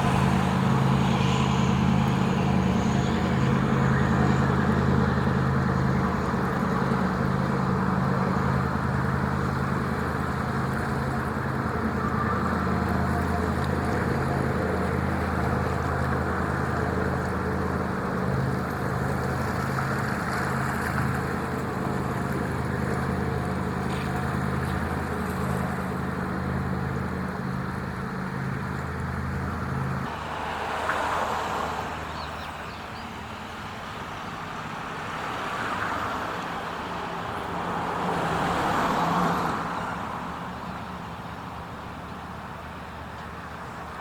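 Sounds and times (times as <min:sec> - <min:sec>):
swells of noise: 0:00.0 - 0:09.0, 0:30.0 - 0:33.4
boat engine droning: 0:00.0 - 0:44.0.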